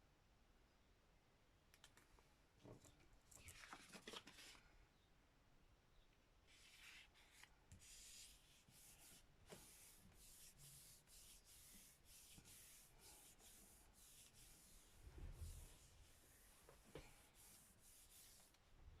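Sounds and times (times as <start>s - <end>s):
hand rubbing paper: 6.5s - 18.6s.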